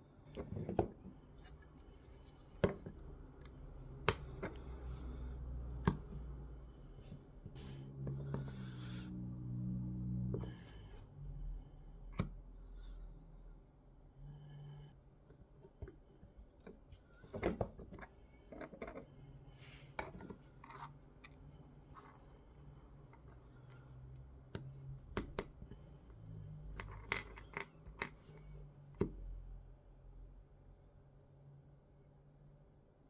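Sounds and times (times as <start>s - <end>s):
faint low hum: 0.0s - 33.0s
small parts clicking and tapping: 26.6s - 28.4s.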